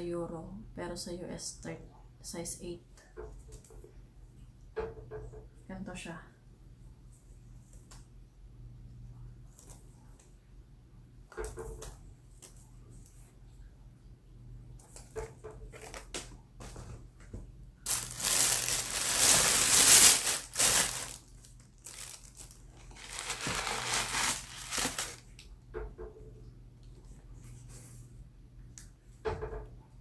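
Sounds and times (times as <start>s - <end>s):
packaging crinkling: 17.9s - 25.3s.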